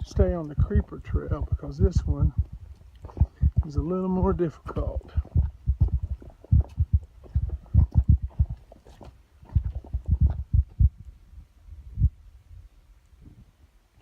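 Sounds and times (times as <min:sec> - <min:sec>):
low thumps on microphone: 0:00.0 - 0:11.1.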